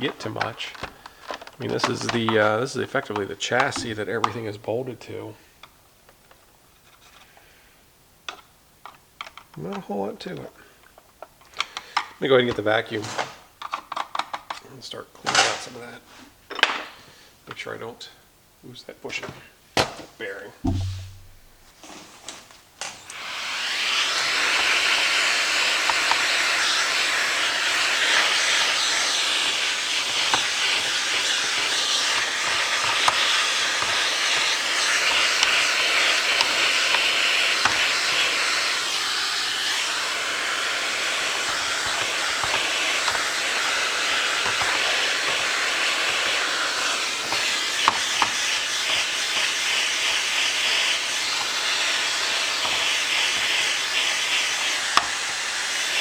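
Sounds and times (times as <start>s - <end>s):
vacuum cleaner hissing: 0.0s - 4.2s, 23.0s - 56.0s.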